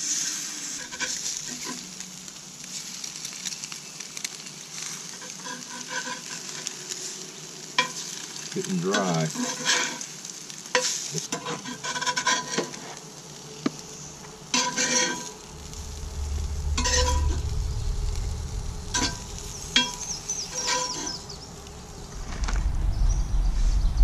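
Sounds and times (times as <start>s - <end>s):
food sizzling in a pan: 0.0s - 22.2s
metal utensil scraping a pan: 0.6s - 1.8s, 5.1s - 6.7s, 7.8s - 8.2s, 9.0s - 10.1s, 10.7s - 12.9s, 14.5s - 15.4s, 16.8s - 17.5s, 19.0s - 21.2s
low rumble: 15.2s - 24.0s.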